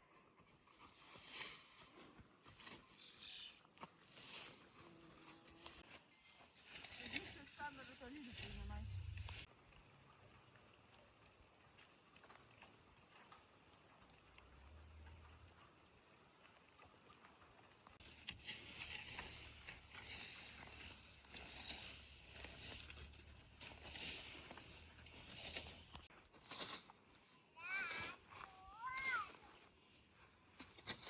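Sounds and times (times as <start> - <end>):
rustling and scraping: 0.4 - 9.5, 18.0 - 31.0.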